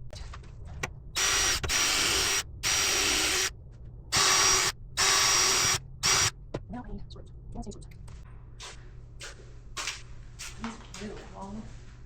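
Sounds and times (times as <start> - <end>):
power drill bursts: 1.2 - 3.5, 4.1 - 6.3.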